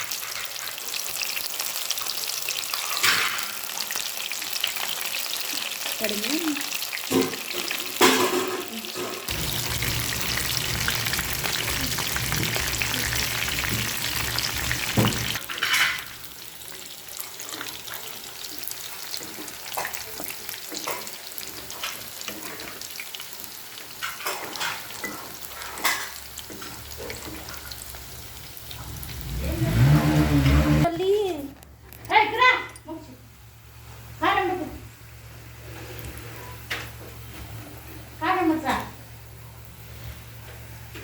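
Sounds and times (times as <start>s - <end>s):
food sizzling in hot oil: 0.0s - 31.3s
low hum: 9.3s - 15.4s.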